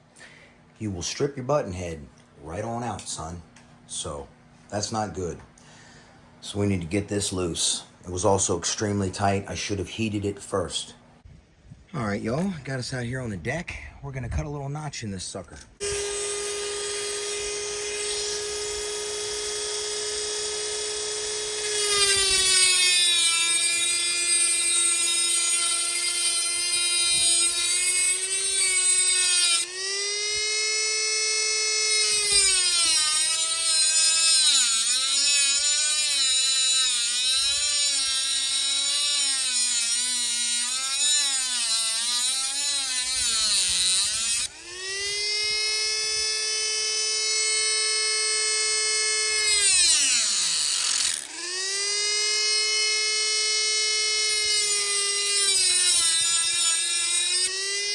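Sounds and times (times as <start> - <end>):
power cutting tool whining: 15.8 - 57.9
disc grinding metal: 21.0 - 30.0, 31.9 - 44.9, 49.2 - 53.0, 54.0 - 57.9.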